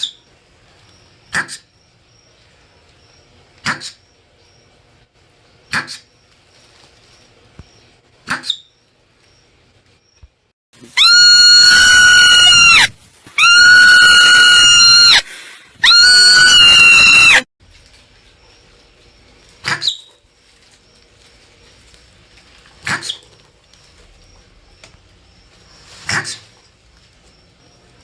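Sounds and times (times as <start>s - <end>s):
marmot screaming: 10.8s - 17.5s.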